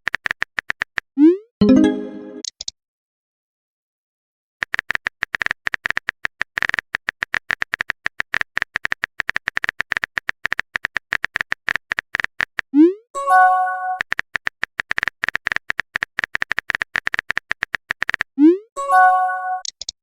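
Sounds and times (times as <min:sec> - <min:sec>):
two-note notification chime: 0:01.6 - 0:02.4
phone keyboard typing clicks: 0:04.6 - 0:12.7, 0:14.0 - 0:18.3.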